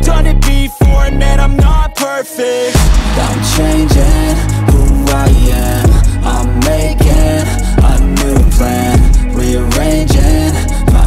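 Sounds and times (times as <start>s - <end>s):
hip-hop music with heavy bass: 0.0s - 11.0s.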